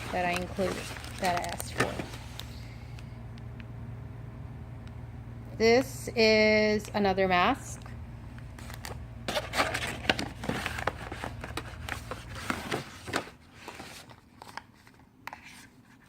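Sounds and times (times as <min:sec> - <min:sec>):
plastic and foil packaging crinkling: 0:00.0 - 0:02.7.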